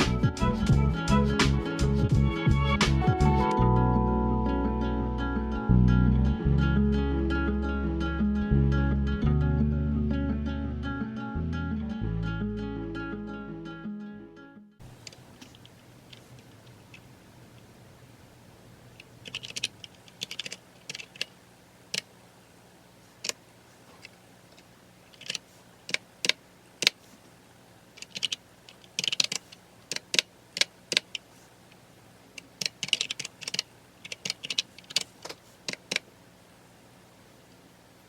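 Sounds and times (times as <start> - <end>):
typing on keyboard: 19.2 - 21.3, 28.0 - 31.2, 32.5 - 35.1.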